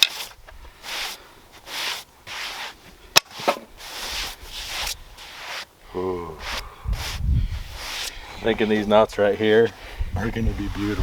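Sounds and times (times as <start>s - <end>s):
scraping strokes: 0.0s - 5.7s, 6.4s - 9.0s.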